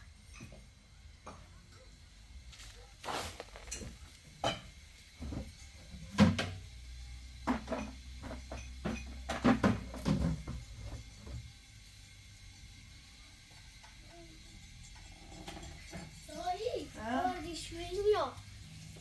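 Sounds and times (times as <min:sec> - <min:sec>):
knocks and clinks of hard objects: 0:03.4 - 0:06.6, 0:07.4 - 0:11.4.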